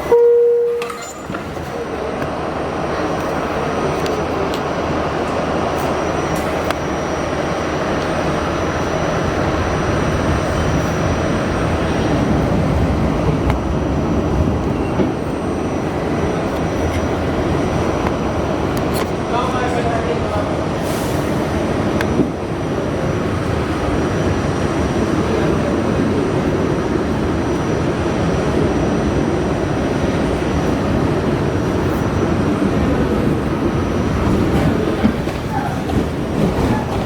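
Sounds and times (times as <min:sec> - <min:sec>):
subway wheels rumbling on rails: 0:00.0 - 0:37.0.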